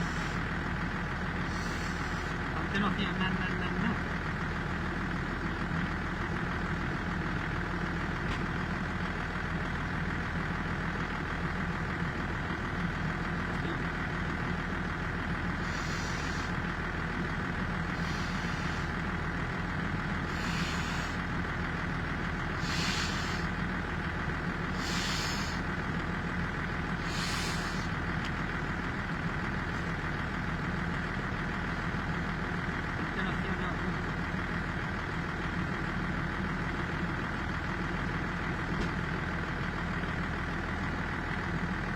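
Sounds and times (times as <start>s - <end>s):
large vehicle engine idling: 0.0s - 41.9s
short hisses: 15.6s - 16.5s, 18.0s - 18.9s, 20.3s - 21.2s, 22.6s - 23.5s, 24.8s - 25.6s, 27.0s - 27.9s.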